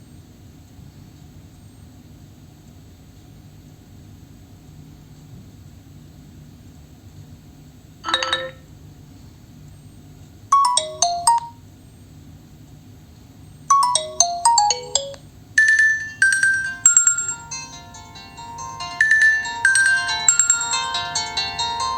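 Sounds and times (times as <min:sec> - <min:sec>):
smartphone ringtone melody: 0:08.0 - 0:08.7, 0:10.6 - 0:11.6, 0:13.7 - 0:17.8, 0:18.4 - 0:21.9.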